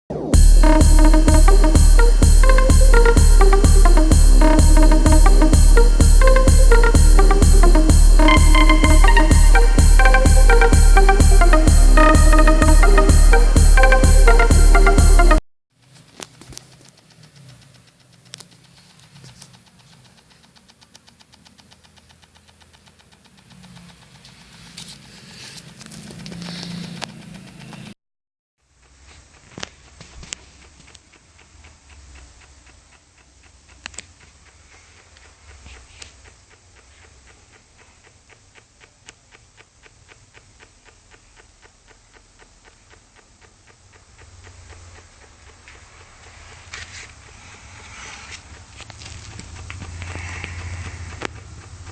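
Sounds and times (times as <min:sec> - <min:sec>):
subwoofer bass notes: 0:00.1 - 0:15.4
rattling ticks: 0:15.8 - 0:27.9.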